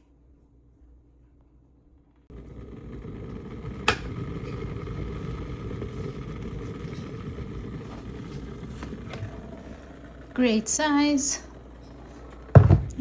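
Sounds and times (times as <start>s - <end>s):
kettle heating water rumble: 2.3s - 13.0s
kettle switch click: 3.8s - 4.2s.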